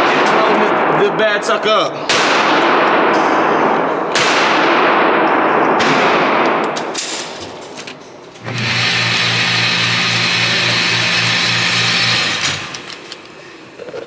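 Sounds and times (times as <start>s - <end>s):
gunshots echoing: 0.0s - 1.3s, 2.0s - 7.2s.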